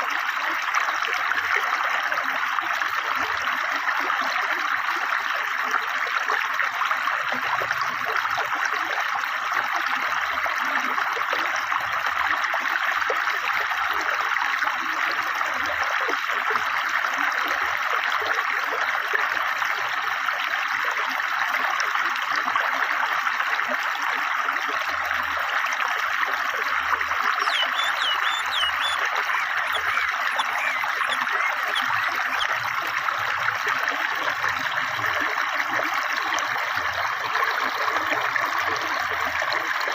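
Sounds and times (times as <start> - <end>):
high bird chirps: 27.4 - 32.5
river water rushing: 27.4 - 32.5.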